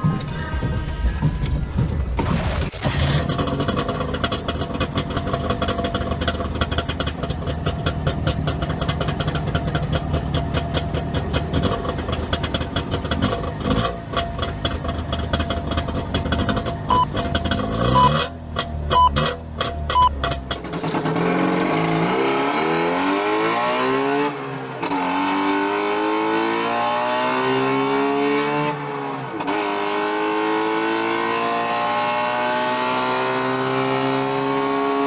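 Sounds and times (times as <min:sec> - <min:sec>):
short high beeps: 0:02.2 - 0:03.2
two-stroke car engine revving: 0:02.2 - 0:35.0.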